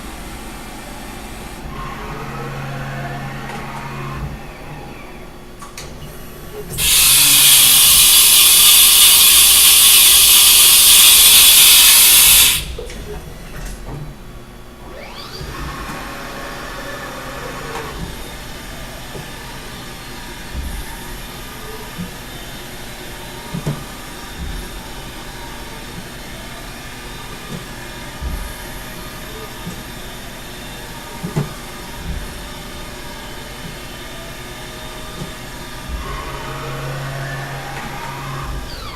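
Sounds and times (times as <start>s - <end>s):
machining center mechanical hum: 0.0s - 38.9s
machining center hissing: 6.7s - 12.8s.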